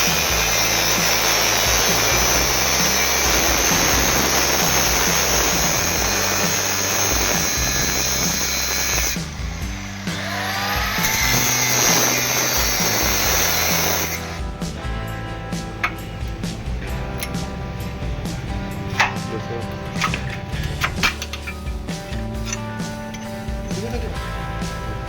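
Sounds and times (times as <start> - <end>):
power tool running: 0.0 - 14.9
background music: 0.0 - 25.0.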